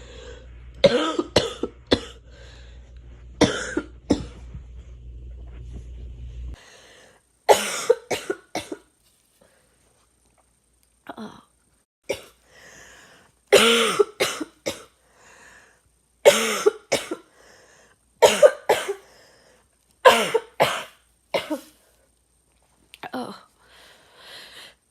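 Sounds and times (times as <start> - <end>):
girl coughing: 0.8 - 2.2, 3.4 - 4.3, 7.5 - 8.8, 13.6 - 14.9, 16.3 - 17.2, 18.2 - 19.0, 20.1 - 21.8
short breaths: 23.6 - 24.9.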